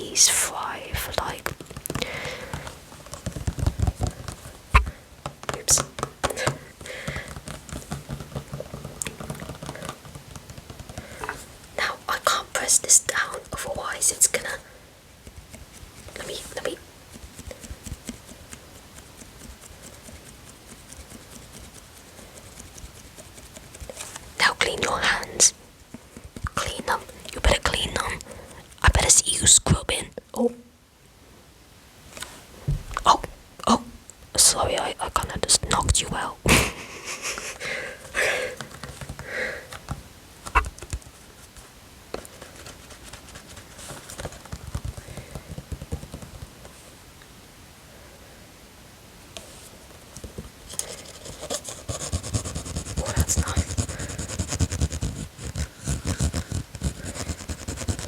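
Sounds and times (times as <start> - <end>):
soft breaths: 0.0 - 8.0, 9.4 - 15.2, 34.4 - 40.8, 43.6 - 45.9
objects tapping and knocking: 1.5 - 11.5.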